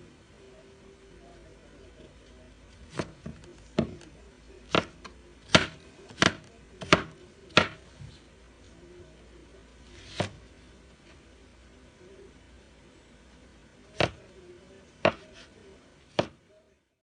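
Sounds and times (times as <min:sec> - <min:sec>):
knife chopping on cutting board: 0:04.7 - 0:07.8, 0:14.0 - 0:14.2, 0:15.0 - 0:15.5, 0:16.1 - 0:16.4.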